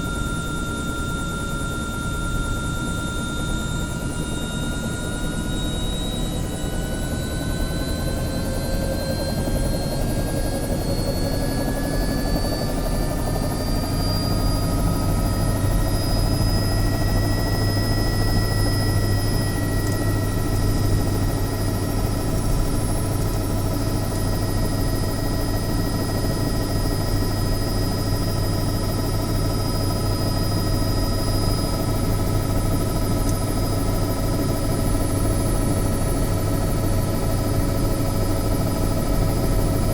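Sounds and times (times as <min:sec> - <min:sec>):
helicopter turbine whine: 0:00.0 - 0:39.9
low rotor drone: 0:00.0 - 0:39.9.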